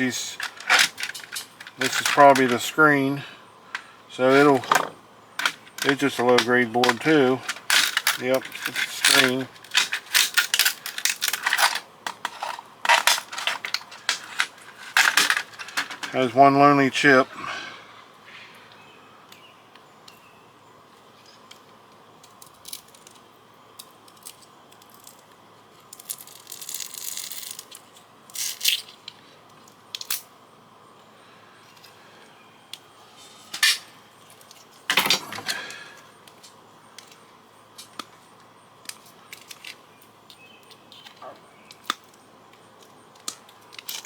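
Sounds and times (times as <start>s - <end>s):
scraping and rustling: 0.0s - 2.7s, 3.7s - 16.3s
clicks and rattles of parts: 0.0s - 2.8s, 3.7s - 16.4s, 21.5s - 30.3s, 33.5s - 37.2s, 37.8s - 44.0s.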